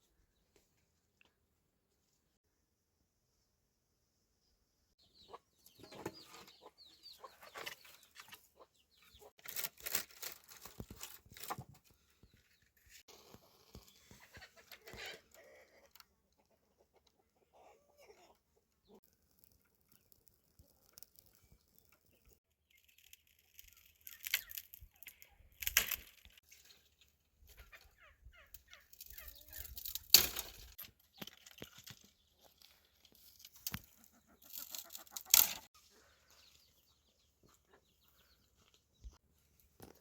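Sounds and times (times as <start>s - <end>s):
chickens clucking: 5.0s - 9.4s, 13.8s - 19.0s, 27.4s - 29.8s, 33.7s - 39.2s.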